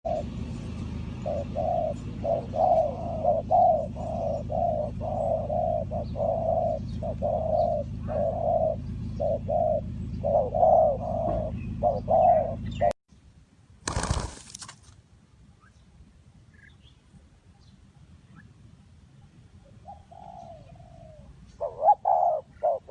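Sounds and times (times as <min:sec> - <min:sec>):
dove cooing: 0:00.1 - 0:00.4, 0:01.1 - 0:13.0, 0:19.8 - 0:22.9
steady low hum: 0:00.1 - 0:14.4.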